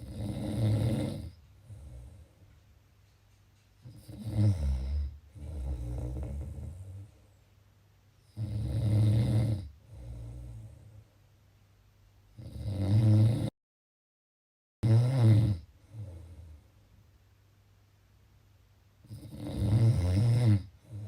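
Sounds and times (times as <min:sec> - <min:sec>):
person snoring: 0:00.0 - 0:02.3, 0:03.9 - 0:07.1, 0:08.3 - 0:11.0, 0:12.4 - 0:13.5, 0:14.8 - 0:16.6, 0:19.0 - 0:21.0.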